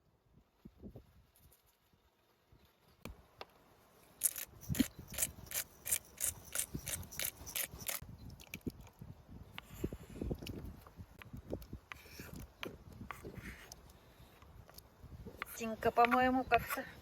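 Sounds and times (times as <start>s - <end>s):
salt grinder rasping: 4.2s - 8.0s.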